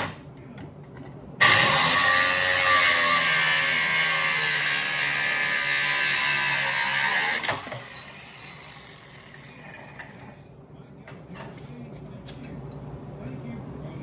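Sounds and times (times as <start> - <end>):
angle grinder cutting metal: 1.4 - 10.2.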